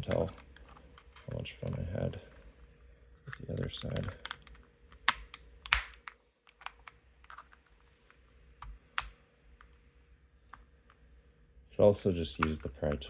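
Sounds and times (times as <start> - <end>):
plastic clicks and ticks: 3.3 - 5.9
plastic clips snapping: 3.3 - 7.4.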